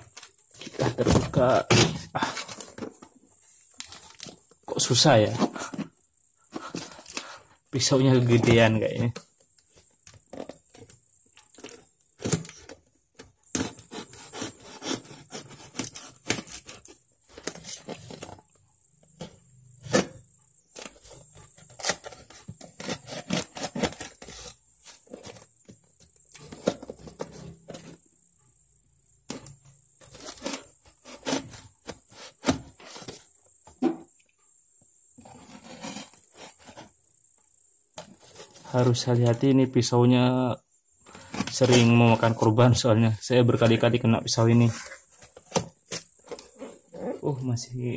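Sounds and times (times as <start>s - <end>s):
cardboard rustling: 0.0s - 28.0s
knife cutting cardboard: 11.6s - 18.4s, 20.8s - 25.5s, 30.0s - 33.2s, 35.2s - 36.9s.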